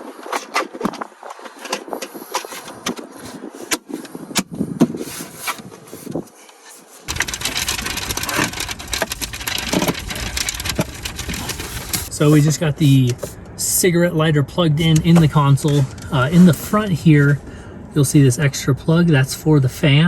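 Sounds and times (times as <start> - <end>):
plastic trim clicking and scraping: 7.1 - 12.1
rushing noise with low rumble: 7.1 - 19.9.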